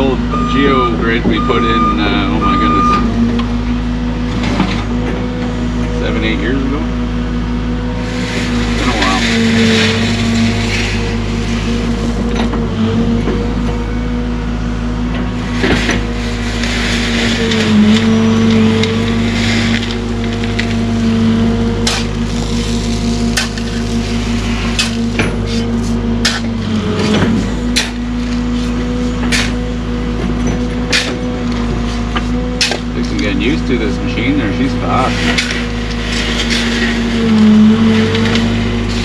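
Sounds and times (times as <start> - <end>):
excavator diesel engine running: 0.0 - 39.0.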